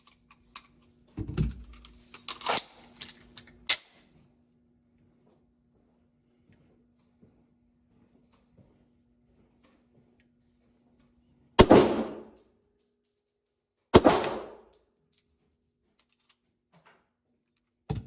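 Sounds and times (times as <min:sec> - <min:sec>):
pistol shots: 0:11.6 - 0:12.3, 0:14.0 - 0:14.7.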